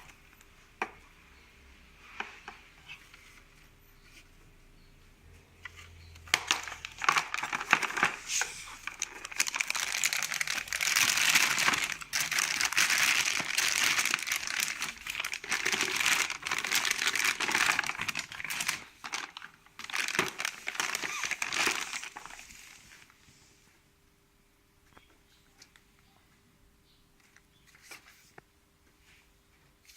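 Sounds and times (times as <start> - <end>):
packaging crinkling and rustling: 5.6 - 23.2.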